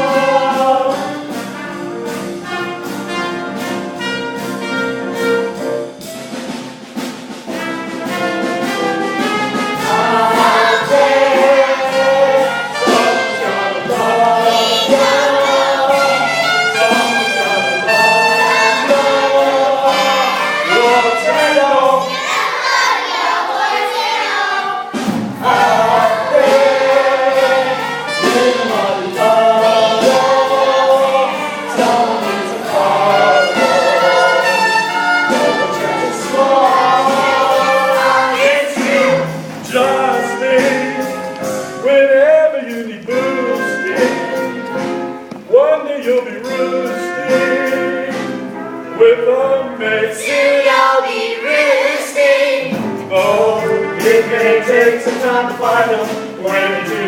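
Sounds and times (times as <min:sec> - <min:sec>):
brass band show tune: 0:00.0 - 0:57.0.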